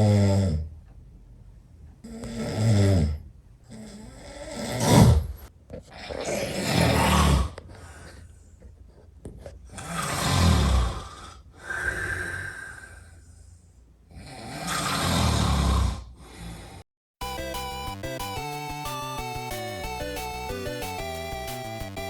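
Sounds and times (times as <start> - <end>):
breathy breaths: 3.7 - 8.9, 9.7 - 16.8
person snoring loudly: 9.8 - 12.7, 14.2 - 16.5.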